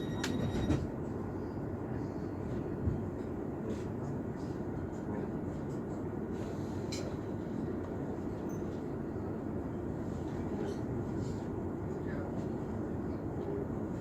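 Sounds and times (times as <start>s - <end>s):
train rumbling: 0.0s - 14.0s
faint clicks from train wheels: 6.8s - 7.2s.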